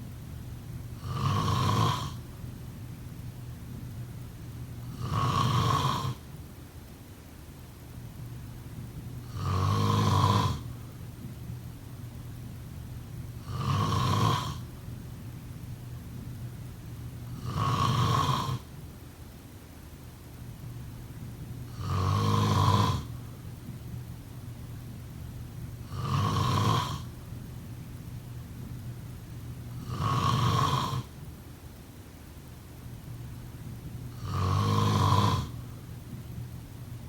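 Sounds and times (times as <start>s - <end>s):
person snoring: 1.0s - 2.2s, 4.9s - 6.2s, 9.3s - 10.7s, 13.4s - 14.6s, 17.4s - 18.7s, 21.7s - 23.1s, 25.9s - 27.1s, 29.8s - 31.1s, 34.1s - 35.6s.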